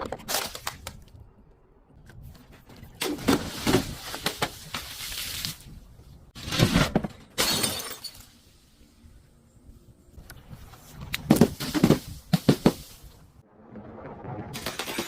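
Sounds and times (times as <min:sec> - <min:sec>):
glass bottle breaking and crunching: 0:07.3 - 0:08.4.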